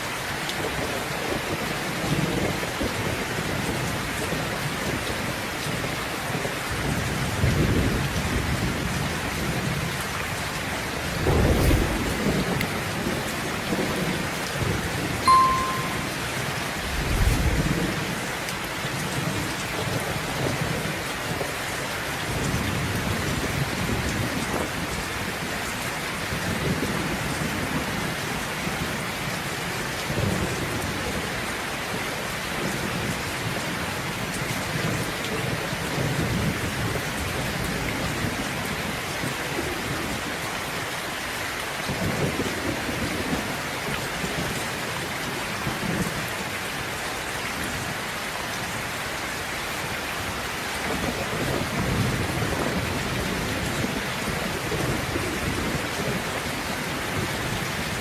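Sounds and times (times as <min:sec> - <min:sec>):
steady rain falling: 0:00.0 - 0:58.0
rolling thunder rumbling: 0:10.6 - 0:14.8, 0:16.8 - 0:18.3
brief high tone: 0:15.2 - 0:16.4.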